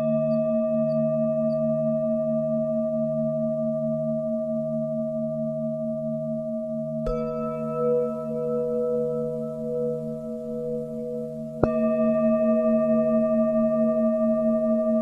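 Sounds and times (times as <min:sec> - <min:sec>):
singing bowl struck: 0:07.0 - 0:15.0
singing bowls ringing: 0:07.0 - 0:15.0.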